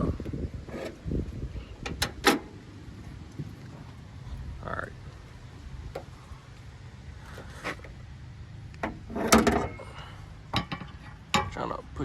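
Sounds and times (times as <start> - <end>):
car hood latch clunk: 1.8 - 2.6, 8.8 - 9.8.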